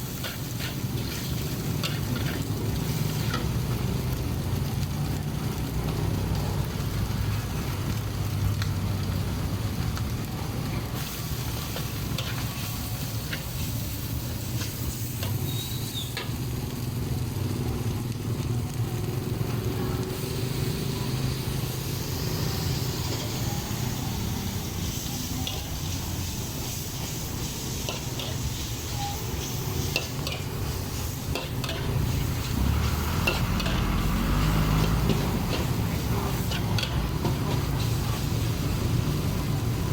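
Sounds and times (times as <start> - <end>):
food sizzling in frying: 0.0 - 39.9.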